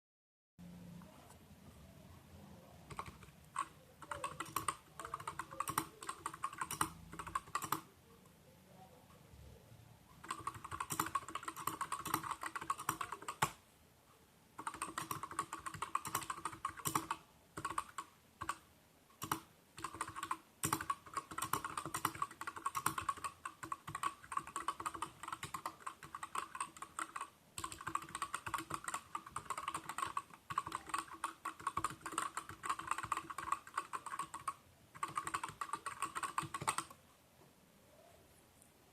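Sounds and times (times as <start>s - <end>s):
mechanical keyboard typing: 2.9s - 7.9s, 10.2s - 13.6s, 14.6s - 18.6s, 19.2s - 37.0s.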